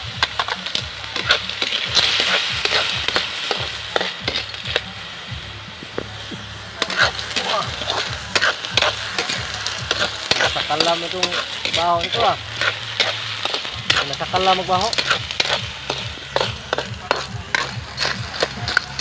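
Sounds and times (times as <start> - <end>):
steady sizzle: 0.0 - 19.0
shells clattering against a pan: 6.8 - 19.0.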